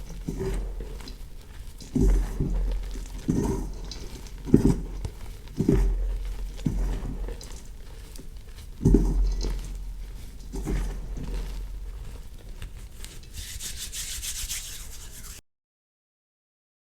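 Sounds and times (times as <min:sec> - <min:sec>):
chalk being crushed by hand: 0:10.4 - 0:15.4.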